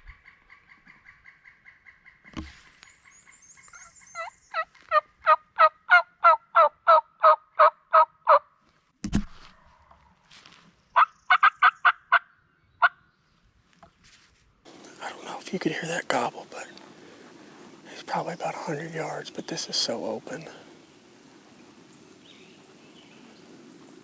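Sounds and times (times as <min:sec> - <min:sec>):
thump: 0:02.3 - 0:02.6, 0:09.0 - 0:09.5
wild turkey yelping: 0:03.6 - 0:08.4, 0:11.0 - 0:13.0, 0:16.1 - 0:24.0.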